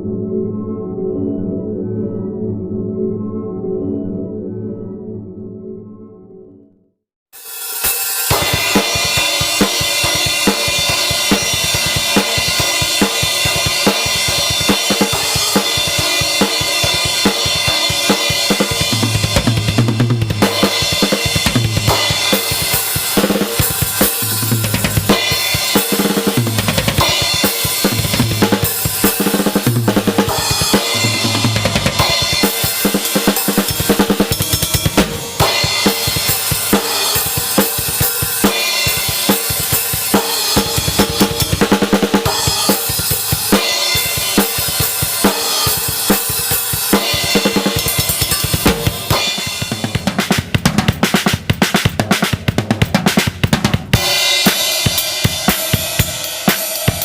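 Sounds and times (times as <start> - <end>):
drum kit groove: 7.4 - 57.0
cymbals ringing: 20.4 - 50.0.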